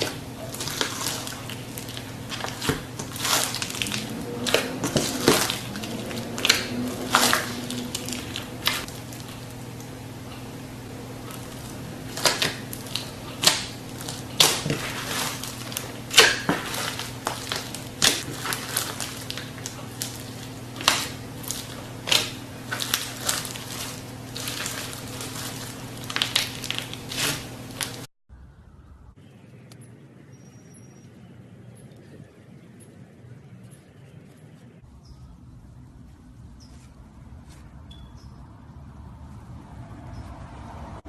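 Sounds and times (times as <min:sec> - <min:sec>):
slime crust cracking and crunching: 0:00.0 - 0:10.0, 0:10.9 - 0:28.1
low electrical hum: 0:00.0 - 0:41.0.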